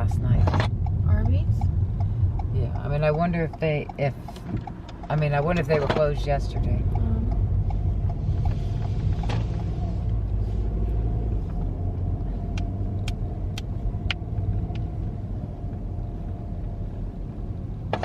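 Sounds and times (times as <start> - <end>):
car engine and tyre rumble: 0.0 - 18.0
sharp ticks: 0.7 - 9.0, 12.5 - 15.0.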